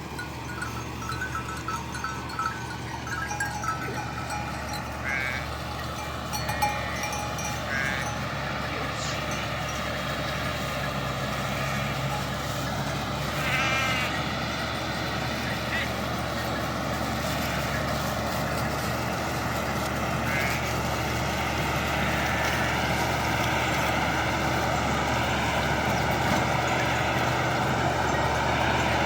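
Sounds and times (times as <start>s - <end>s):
bells clinking: 0.0s - 29.0s
sheep bleating: 3.2s - 9.6s, 11.3s - 14.3s, 15.4s - 18.4s, 19.8s - 21.2s.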